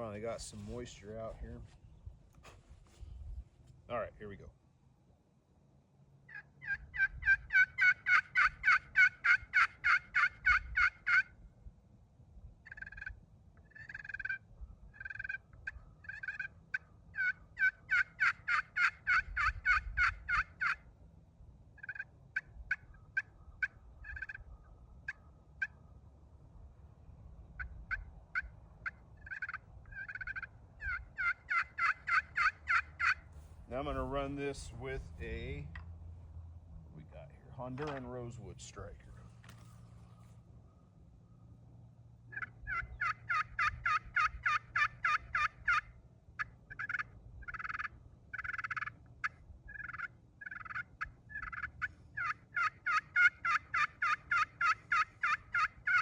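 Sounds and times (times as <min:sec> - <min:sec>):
turkey pot call yelps: 0:06.3 - 0:11.4, 0:12.6 - 0:20.9, 0:21.8 - 0:25.9, 0:27.6 - 0:33.3, 0:42.3 - 0:56.0.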